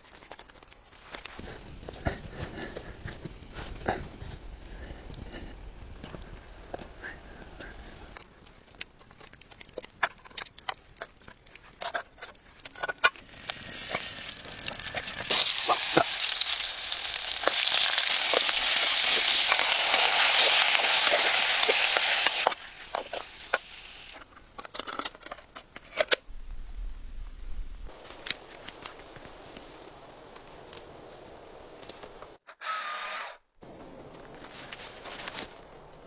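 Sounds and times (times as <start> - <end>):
clicks and crackles: 0.0 - 26.9, 27.8 - 32.4
food sizzling in hot oil: 13.2 - 24.2.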